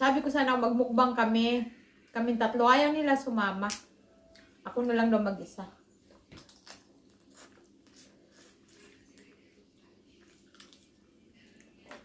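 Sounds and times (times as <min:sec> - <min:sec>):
wet chewing and mouth smacks: 0:06.2 - 0:11.8.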